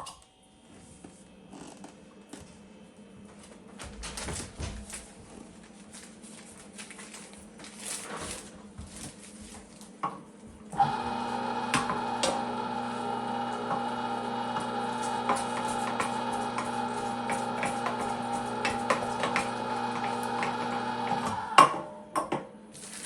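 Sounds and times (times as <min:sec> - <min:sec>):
meat grinder motor hum and whine: 0:10.7 - 0:22.1.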